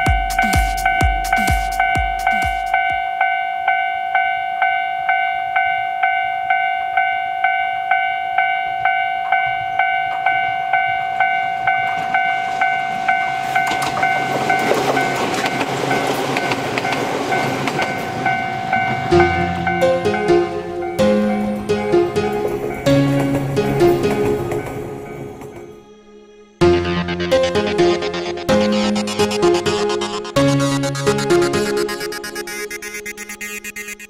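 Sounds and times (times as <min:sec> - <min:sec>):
level crossing bell ringing: 0:00.0 - 0:15.2, 0:17.4 - 0:25.4
train rumble and wheel noise: 0:08.7 - 0:25.8.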